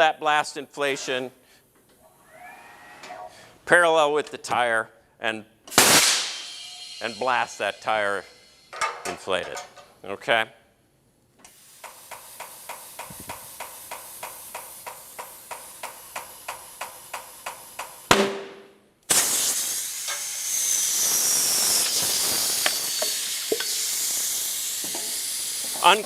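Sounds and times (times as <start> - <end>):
sharp pop: 5.7 - 6.6, 18.1 - 19.6
pulsing air hiss: 5.8 - 8.7, 11.5 - 18.1, 19.1 - 26.0.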